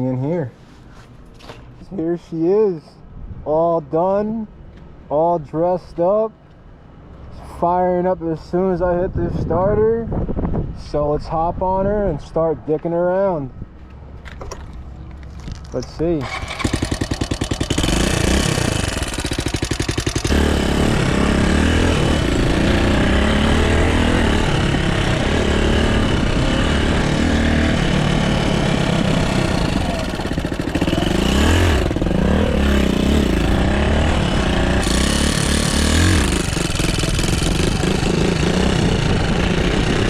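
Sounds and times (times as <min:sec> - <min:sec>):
motorcycle engine revving: 0:16.2 - 0:40.0.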